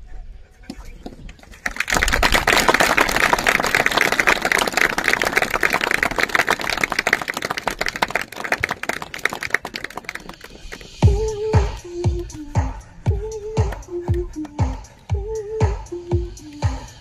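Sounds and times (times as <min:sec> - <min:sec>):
audience applauding: 0:01.6 - 0:10.8.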